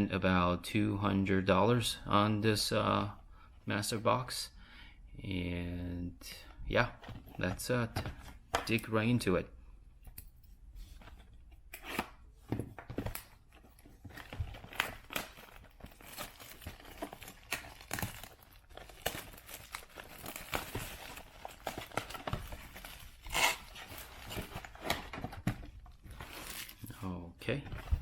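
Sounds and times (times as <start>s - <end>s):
packaging crinkling and ripping: 13.0s - 26.9s.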